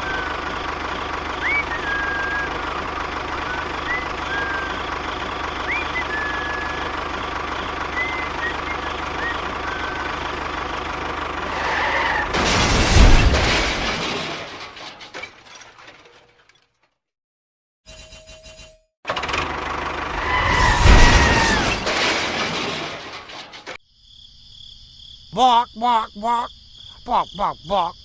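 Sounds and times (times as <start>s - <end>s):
small engine running: 0.0s - 12.3s, 19.1s - 20.6s
loud crashing rush: 11.4s - 15.0s, 20.1s - 23.7s.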